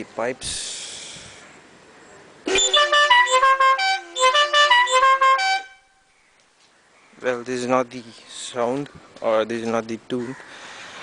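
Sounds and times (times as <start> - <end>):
musical air horn tune: 2.5 - 6.0.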